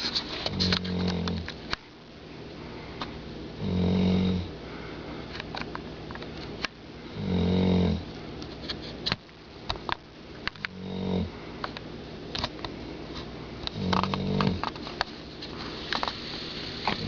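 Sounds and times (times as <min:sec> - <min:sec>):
person snoring: 0:00.5 - 0:01.5, 0:03.6 - 0:04.5, 0:07.1 - 0:08.1, 0:10.6 - 0:11.4, 0:13.7 - 0:14.7.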